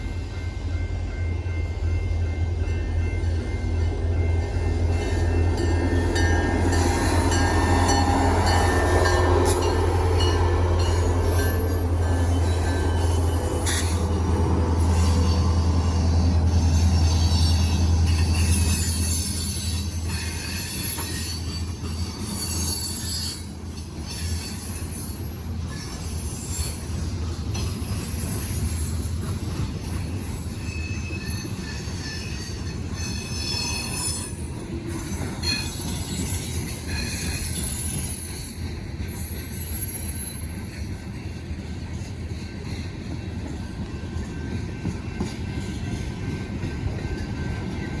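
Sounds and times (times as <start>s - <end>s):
train cars rumbling and clattering: 0.0s - 48.0s
high-pitched wheel squeal: 10.9s - 27.1s, 27.8s - 40.7s.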